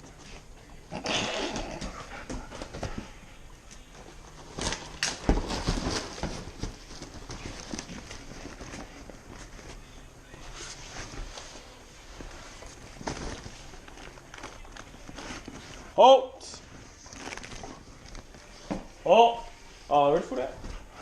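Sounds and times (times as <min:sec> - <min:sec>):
scuffing and rustling: 0:01.8 - 0:16.0.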